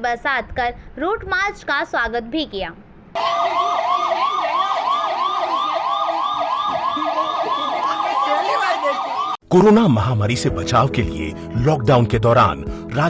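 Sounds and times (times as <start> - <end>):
police siren yelping: 3.2 - 9.4.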